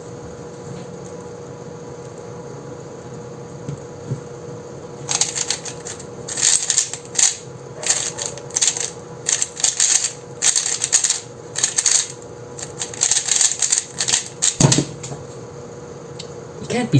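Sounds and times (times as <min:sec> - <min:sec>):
faint steady hum: 0:00.0 - 0:16.9
speed cube plastic clicking: 0:05.1 - 0:14.6.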